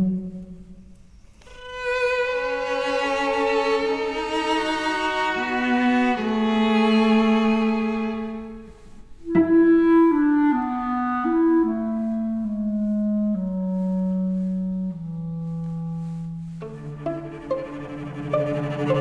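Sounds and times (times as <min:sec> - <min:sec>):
classical instrumental music: 0:00.0 - 0:19.0.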